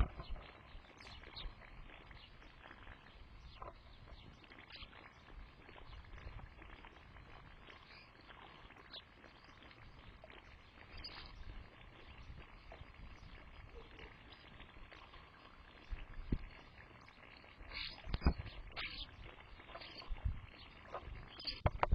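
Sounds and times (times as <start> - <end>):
bird chirps: 0.0 - 6.1, 7.7 - 9.6, 10.2 - 11.5, 16.4 - 21.7.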